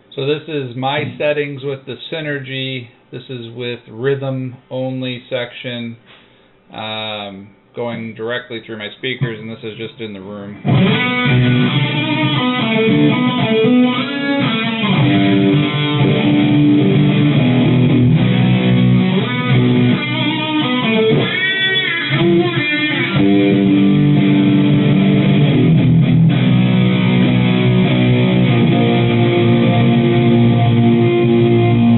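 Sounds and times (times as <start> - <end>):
electric guitar through speakers: 0.0 - 2.6, 9.0 - 31.9.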